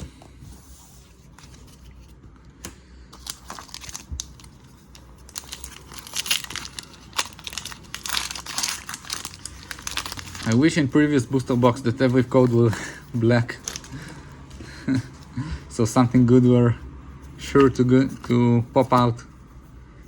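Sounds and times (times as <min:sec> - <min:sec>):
foil wrapper crinkling and tearing: 0:03.2 - 0:11.8, 0:12.8 - 0:14.1.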